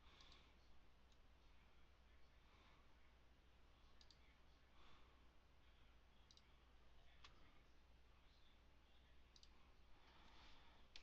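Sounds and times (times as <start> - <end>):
computer mouse clicks: 0.2 - 0.5, 4.0 - 4.2, 6.2 - 6.5, 9.3 - 9.6.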